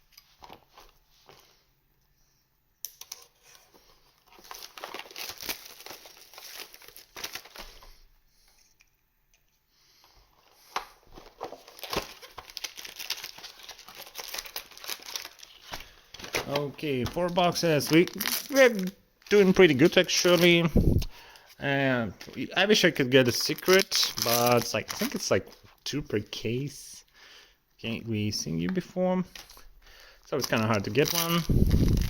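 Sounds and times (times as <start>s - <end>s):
plastic wrapping tearing and crinkling: 3.0s - 7.9s, 10.7s - 21.1s, 22.2s - 25.6s, 30.3s - 32.0s.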